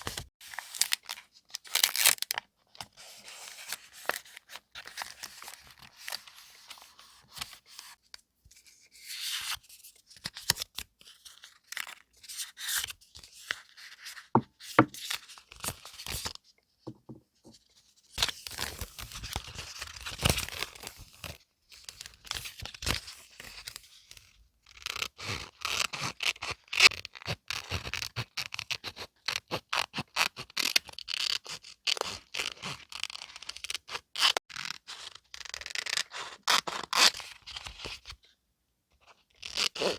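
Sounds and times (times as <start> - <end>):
paper rustling and scraping: 0.0 - 0.9.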